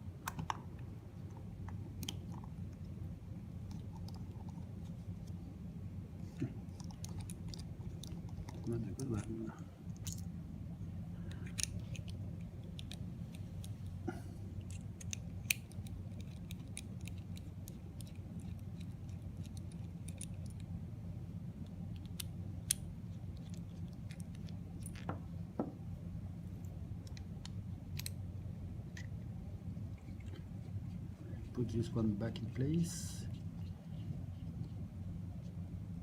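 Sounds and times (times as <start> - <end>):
steady low hum: 0.0 - 36.0
small clicks of tool and parts: 27.0 - 28.2.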